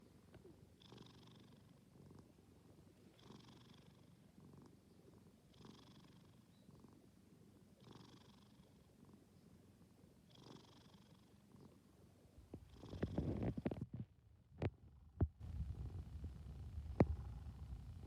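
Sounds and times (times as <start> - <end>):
cat snoring softly: 0.3 - 14.0
continuous low rumble: 11.0 - 18.0.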